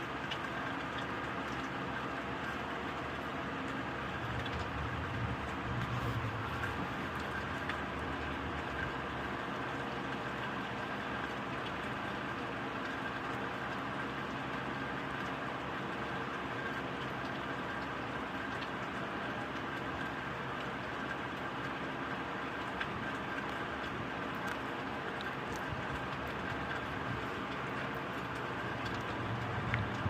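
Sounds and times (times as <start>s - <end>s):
steady rain hiss: 1.8s - 30.0s
drops ticking: 18.5s - 30.0s.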